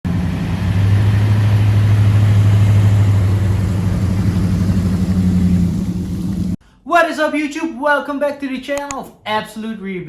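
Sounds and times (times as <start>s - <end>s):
jet ski engine running: 0.1s - 6.6s.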